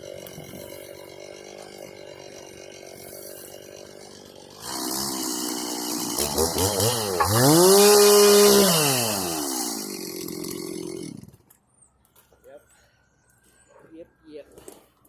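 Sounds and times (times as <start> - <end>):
chainsaw revving: 0.0 - 11.4.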